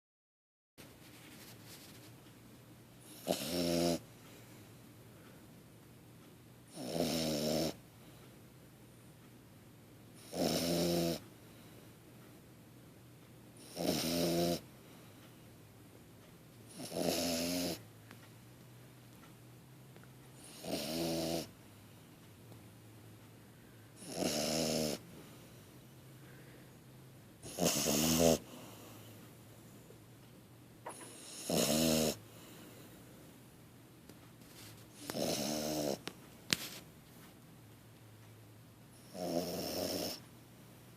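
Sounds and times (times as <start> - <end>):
puppy snoring: 3.0 - 4.1, 6.7 - 7.8, 10.2 - 11.2, 13.6 - 14.7, 16.7 - 17.9, 20.4 - 21.6, 24.0 - 25.6, 27.4 - 29.2, 30.8 - 32.9, 34.9 - 36.1, 38.9 - 40.2
quiet breathing: 4.0 - 5.7, 7.9 - 8.6, 11.2 - 12.4, 14.6 - 15.6, 23.3 - 24.0, 25.0 - 27.2, 28.4 - 30.1, 32.2 - 33.6.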